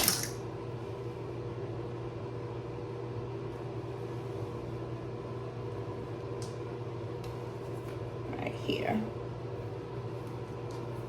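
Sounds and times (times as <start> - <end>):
low hum with faint hiss: 0.0 - 11.0.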